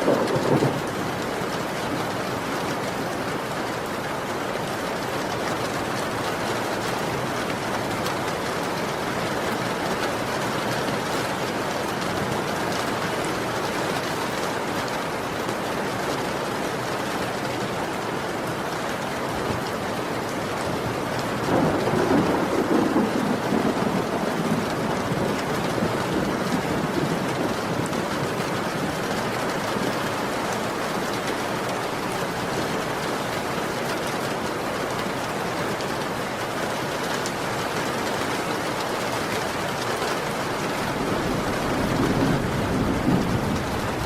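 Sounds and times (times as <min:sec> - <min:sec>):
low thunder rumble: 0:00.0 - 0:00.9, 0:21.4 - 0:28.9, 0:40.9 - 0:44.0
heavy rain: 0:00.0 - 0:44.0.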